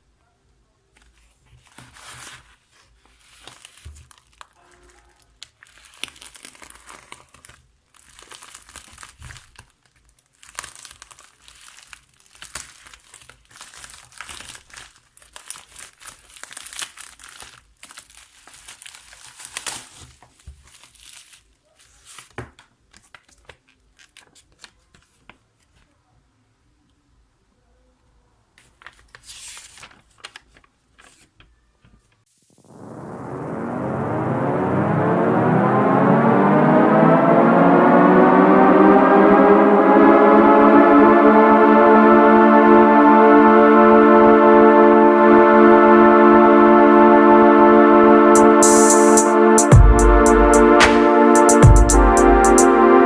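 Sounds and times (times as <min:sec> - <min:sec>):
packaging crinkling and tearing: 0:05.6 - 0:20.0.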